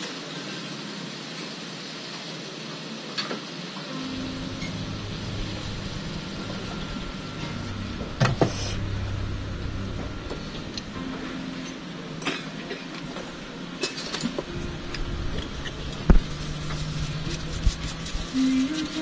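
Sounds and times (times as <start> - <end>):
steady hum: 3.9 - 19.0.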